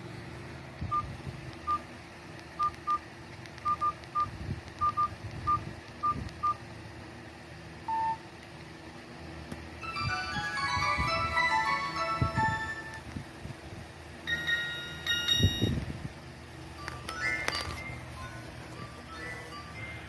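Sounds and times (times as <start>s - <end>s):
phone keypad beeps: 2.6s - 3.0s, 3.6s - 6.6s, 7.9s - 8.2s.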